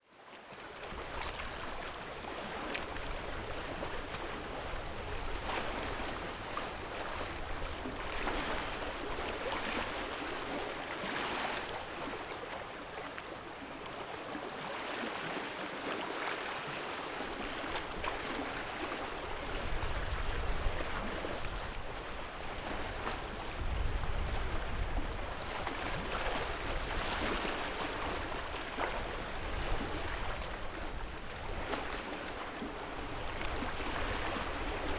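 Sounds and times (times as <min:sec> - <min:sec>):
lake waves washing onto shore: 0:00.8 - 0:34.9.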